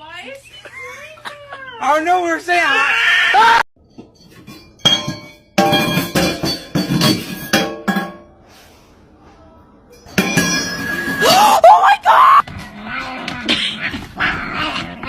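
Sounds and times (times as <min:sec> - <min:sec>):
clattering clinking knocks: 0:03.9 - 0:08.2, 0:10.0 - 0:11.2
wavering high cry: 0:10.6 - 0:12.4.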